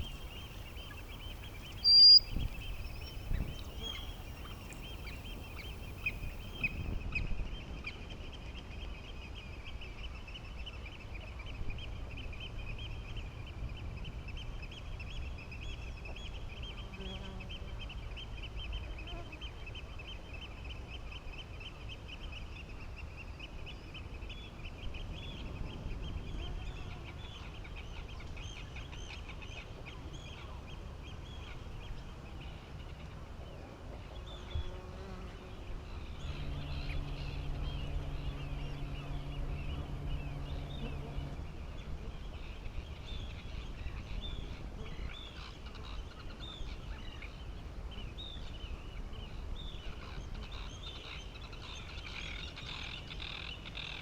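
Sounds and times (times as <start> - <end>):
flock of birds calling: 0.0 - 6.8
low steady rumble: 35.8 - 44.4.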